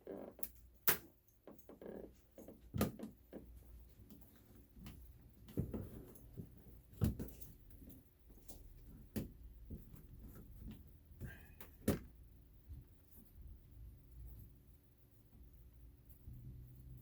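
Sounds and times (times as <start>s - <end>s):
objects knocking and clunking: 4.8s - 12.1s.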